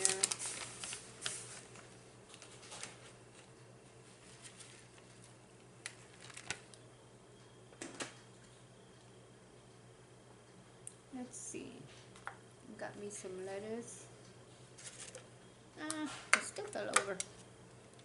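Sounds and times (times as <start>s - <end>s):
food rustling: 0.0s - 6.7s, 14.7s - 15.3s
faint steady hum: 0.0s - 18.0s.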